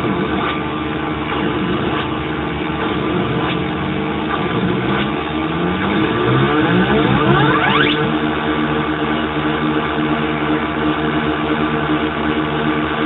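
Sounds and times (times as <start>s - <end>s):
synthesizer drone with pitch glides: 2.6s - 9.1s.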